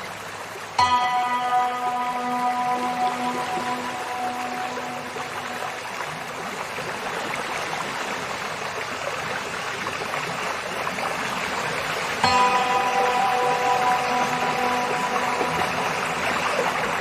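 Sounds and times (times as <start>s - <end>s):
river water rushing: 0.0s - 17.0s
soft music: 0.8s - 6.8s, 12.2s - 17.0s.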